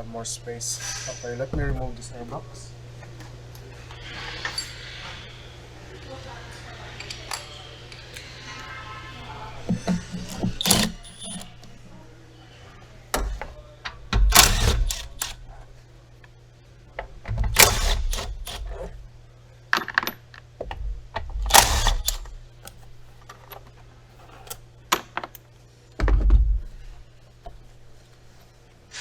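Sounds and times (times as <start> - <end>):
clips and tools clicking: 9.7 - 11.7, 14.2 - 15.4, 17.5 - 18.9, 21.4 - 22.8.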